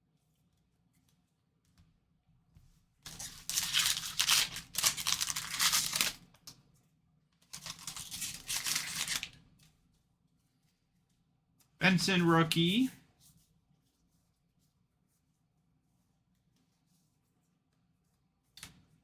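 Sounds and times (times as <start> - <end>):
foil wrapper crinkling and ripping: 3.1 - 6.4, 7.5 - 9.4.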